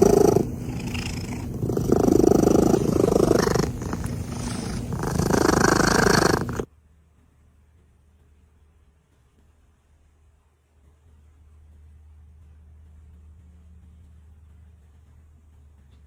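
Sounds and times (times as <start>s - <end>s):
cat purring: 0.0s - 6.7s.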